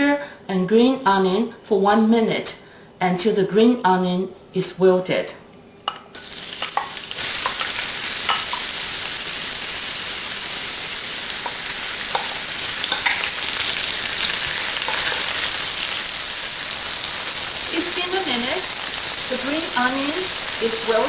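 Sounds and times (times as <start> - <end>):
food sizzling in hot oil: 6.2 - 21.0.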